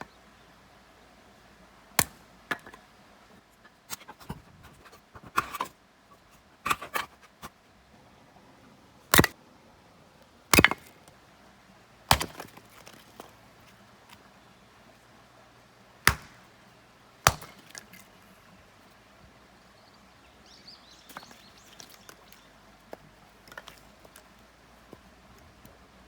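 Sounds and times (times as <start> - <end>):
blade chopping into wood: 2.0 - 2.7, 9.1 - 9.4, 10.5 - 11.0, 12.1 - 12.9, 16.1 - 16.4, 17.3 - 17.9
wood pieces knocking: 10.5 - 11.0.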